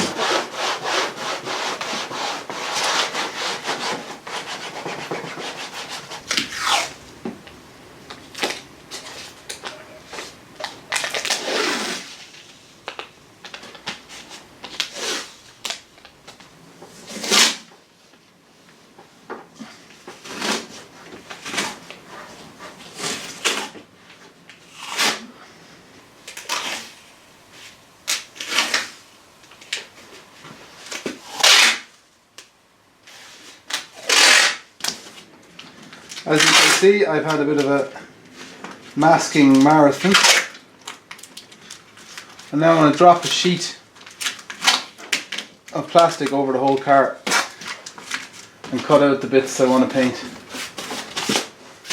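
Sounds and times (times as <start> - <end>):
masking tape ripping off roll: 5.5 - 7.0, 10.6 - 15.8, 17.1 - 17.7, 24.6 - 25.2, 26.3 - 27.1, 28.0 - 29.0, 30.9 - 31.9, 33.6 - 35.0, 36.1 - 37.8, 39.1 - 42.4, 43.4 - 46.2, 47.2 - 48.4, 50.5 - 51.9.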